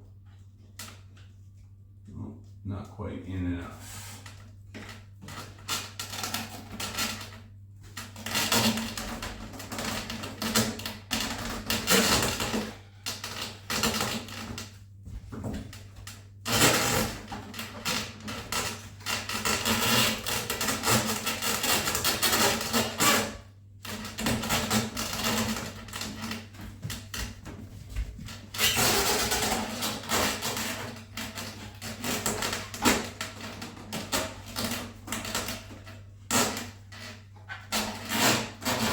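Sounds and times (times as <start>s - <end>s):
steady low hum: 0.0s - 37.8s
foam squeaking and rubbing: 28.3s - 33.2s, 36.3s - 38.9s.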